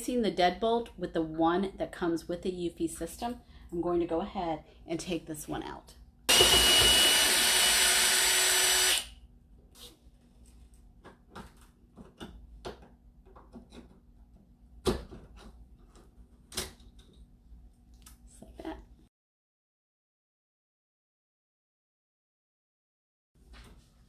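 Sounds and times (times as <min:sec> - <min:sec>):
power drill running: 0:06.3 - 0:09.1.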